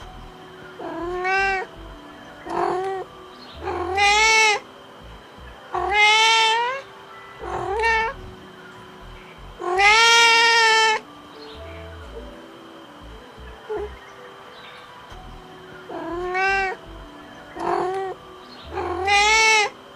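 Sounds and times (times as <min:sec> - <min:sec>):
cat meowing: 0:00.8 - 0:01.7, 0:03.6 - 0:04.6, 0:05.7 - 0:06.8, 0:07.4 - 0:08.2, 0:09.6 - 0:11.0, 0:15.9 - 0:16.8, 0:17.6 - 0:19.7.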